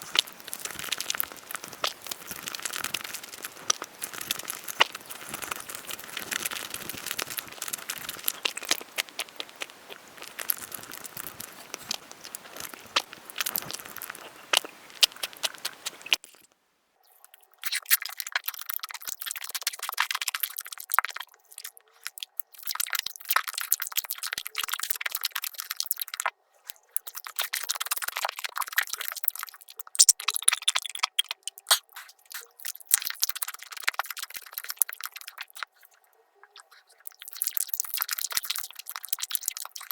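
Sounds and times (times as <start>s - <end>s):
sped-up eating clicks: 0.1s - 16.3s, 27.0s - 39.9s.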